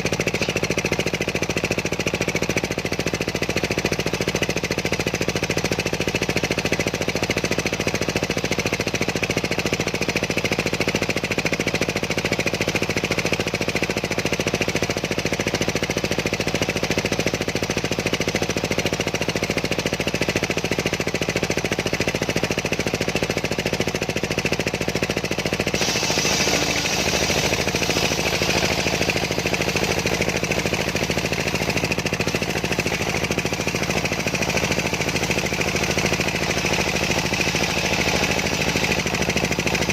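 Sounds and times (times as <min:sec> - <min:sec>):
circular sawmill running: 0:00.0 - 0:10.7, 0:23.0 - 0:39.9.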